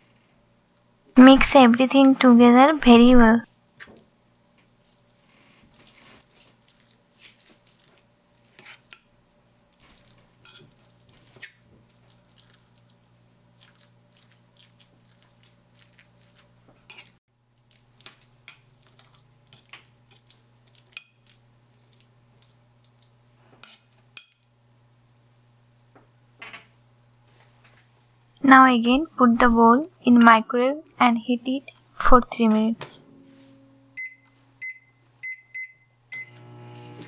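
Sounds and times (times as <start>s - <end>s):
low steady hum: 0.0s - 37.0s
utensil scraping a bowl: 16.2s - 17.2s.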